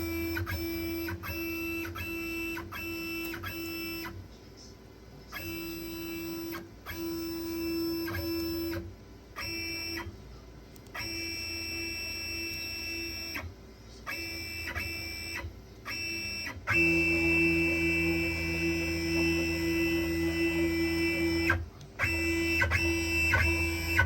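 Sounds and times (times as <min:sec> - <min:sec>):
servo motors whining: 0:09.4 - 0:10.1, 0:10.9 - 0:24.0.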